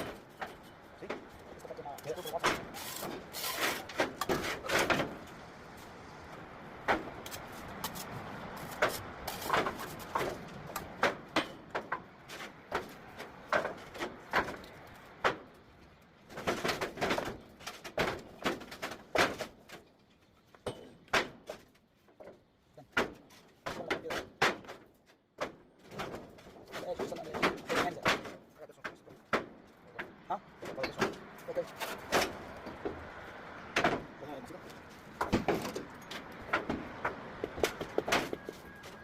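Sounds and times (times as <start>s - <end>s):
sharp knocks and clicks: 35.1s - 39.0s.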